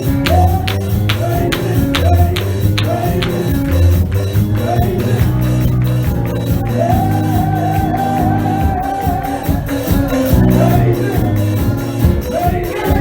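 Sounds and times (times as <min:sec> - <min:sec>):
gospel music with percussion: 0:00.0 - 0:13.0.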